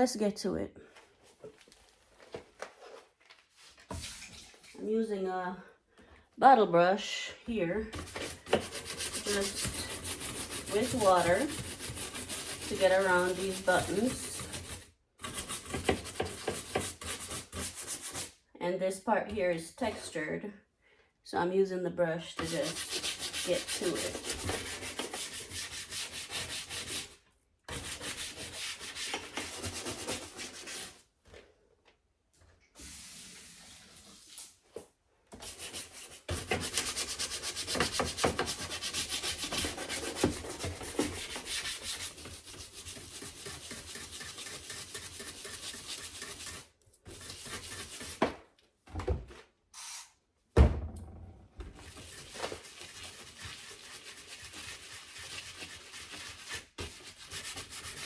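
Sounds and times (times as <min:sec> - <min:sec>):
brush scrubbing a panel: 0:08.0 - 0:18.4, 0:22.4 - 0:31.0, 0:35.4 - 0:48.2, 0:51.8 - 0:58.0.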